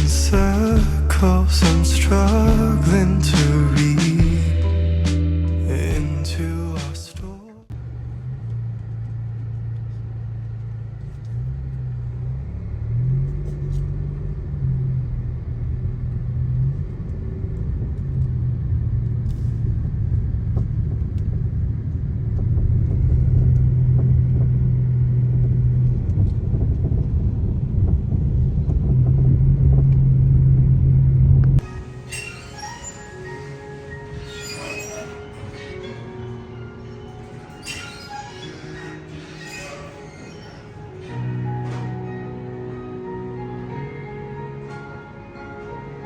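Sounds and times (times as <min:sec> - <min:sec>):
vehicle engine rumbling: 0:00.0 - 0:45.1.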